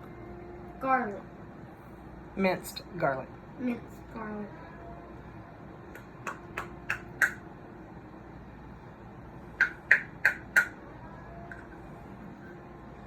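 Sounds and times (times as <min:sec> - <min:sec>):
spoon tapping bowl rim: 0:09.6 - 0:10.8.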